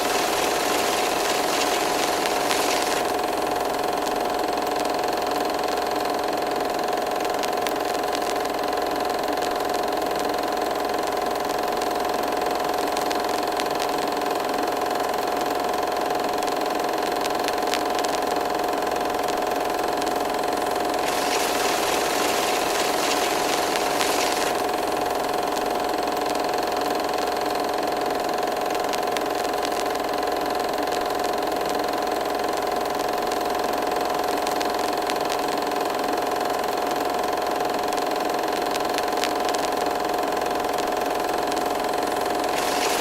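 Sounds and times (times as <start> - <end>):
hiss: 0.0 - 3.1, 21.0 - 24.7, 42.5 - 43.0.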